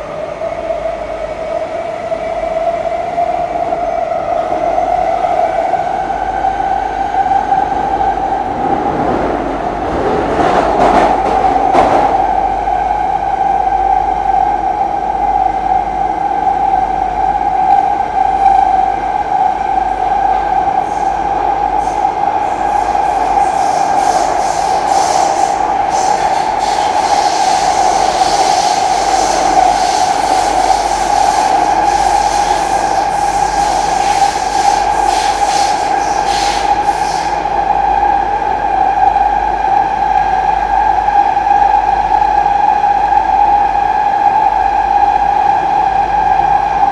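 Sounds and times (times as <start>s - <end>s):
train running noise with whine: 0.0s - 46.9s
wheels squealing on rails: 18.0s - 39.2s.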